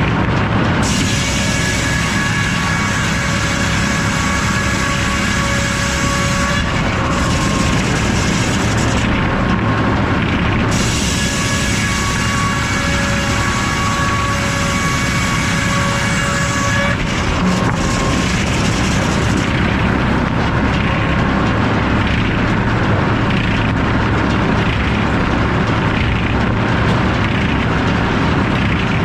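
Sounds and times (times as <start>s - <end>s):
sawmill running: 0.0s - 29.0s
saw blade cutting log: 0.8s - 9.4s, 10.6s - 20.2s.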